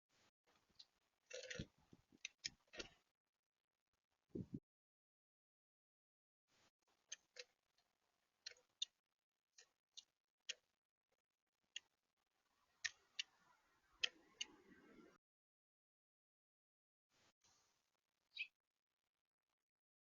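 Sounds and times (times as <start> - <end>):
birds pecking on a feeder: 0.5 - 3.0, 6.9 - 9.0, 12.6 - 14.7.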